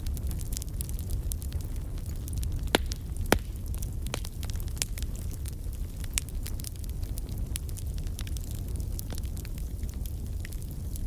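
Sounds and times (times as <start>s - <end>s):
fire crackling and popping: 0.0s - 11.0s
wood fire rumbling: 0.0s - 11.0s.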